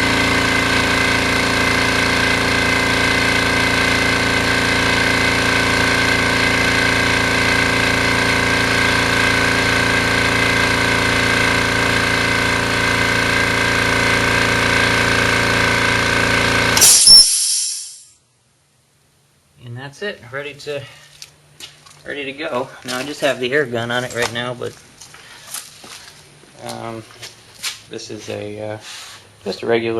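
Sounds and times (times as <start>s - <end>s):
air compressor running: 0.0s - 18.1s
whistling hiss of compressor cutoff: 16.7s - 18.2s.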